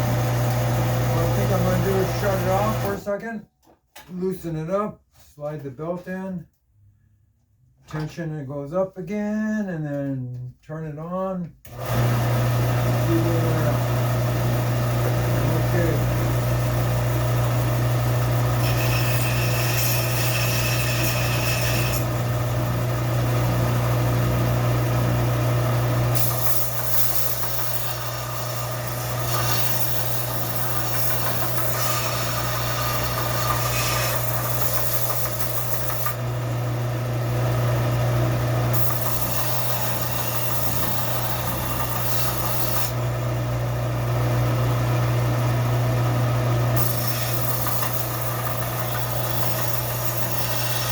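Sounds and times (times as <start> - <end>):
belt sander motor hum: 0.0 - 3.0, 11.7 - 50.9
steel blade grinding on belt: 18.6 - 22.1, 26.1 - 36.2, 38.7 - 43.0, 46.8 - 50.9.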